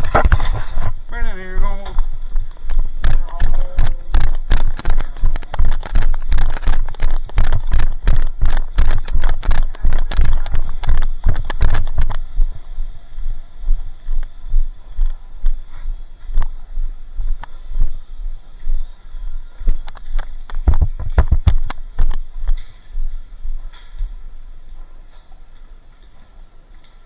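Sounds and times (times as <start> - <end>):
gear rattling: 0.0 - 12.9
running footsteps: 0.0 - 27.0
clicks: 1.8 - 12.6, 19.6 - 22.9.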